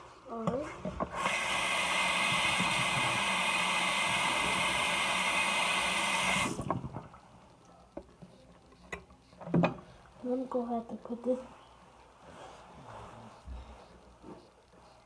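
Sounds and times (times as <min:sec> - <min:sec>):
water running from a tap: 0:01.2 - 0:06.8.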